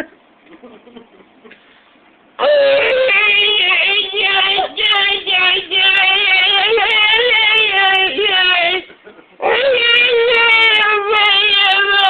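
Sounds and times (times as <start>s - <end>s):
person whining nasal eeee: 2.4s - 3.4s.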